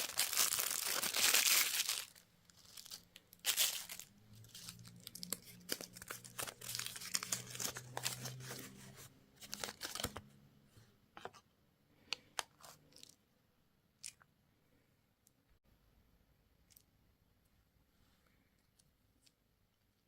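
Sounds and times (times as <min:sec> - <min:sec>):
crinkly wrapper tearing and crumpling: 0:00.0 - 0:08.8, 0:09.4 - 0:10.2.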